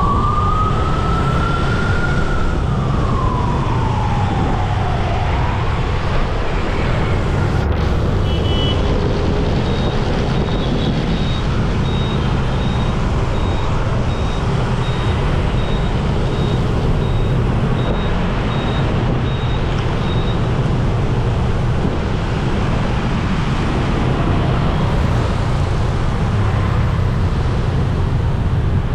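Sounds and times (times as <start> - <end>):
rumble of traffic engines: 0.0 - 28.9
faint high beeps: 9.6 - 20.4.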